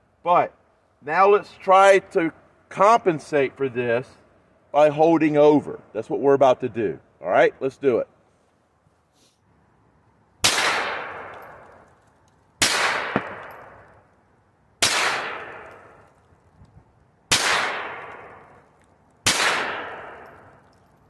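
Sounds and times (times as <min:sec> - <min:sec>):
gunshots with echoing tails: 0:10.4 - 0:11.8, 0:12.6 - 0:13.9, 0:14.8 - 0:16.1, 0:17.3 - 0:18.6, 0:19.2 - 0:20.7.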